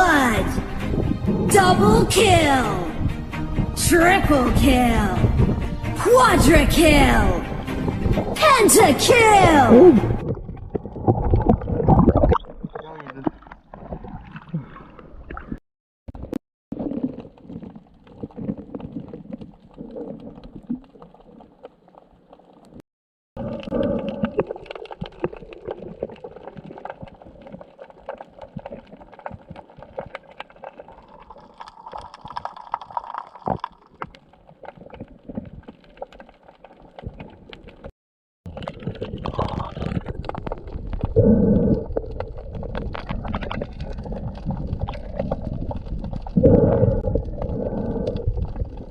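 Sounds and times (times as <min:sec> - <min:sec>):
underwater gurgling and bubbling: 0:00.0 - 0:15.6, 0:16.2 - 0:22.8, 0:23.4 - 0:37.9, 0:38.5 - 0:48.9
small underwater clicks: 0:16.2 - 0:22.8, 0:23.4 - 0:37.9, 0:38.5 - 0:48.9.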